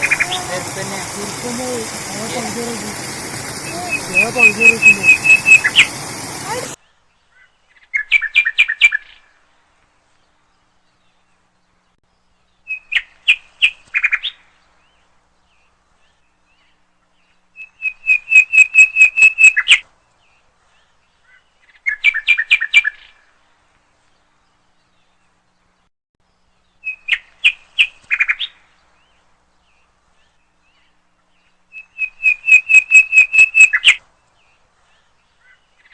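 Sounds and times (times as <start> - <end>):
bird trilling: 0.0 - 6.8, 31.8 - 34.0.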